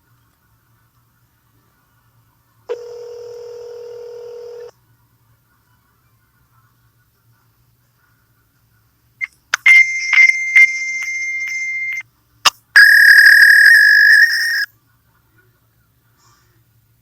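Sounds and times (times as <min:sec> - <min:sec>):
clicks over tone: 0:12.8 - 0:14.7
fax machine handshake tones: 0:12.8 - 0:14.7.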